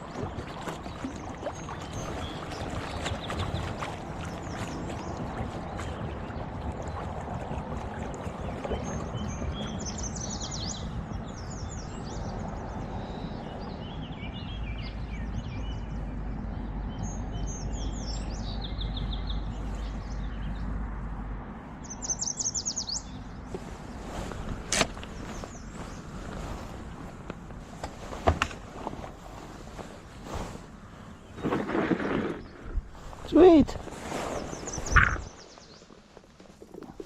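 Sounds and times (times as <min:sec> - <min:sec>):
water noise: 0:00.0 - 0:22.1, 0:23.0 - 0:37.0
wind: 0:00.0 - 0:37.0
songbird trilling: 0:21.8 - 0:23.2, 0:34.4 - 0:35.9.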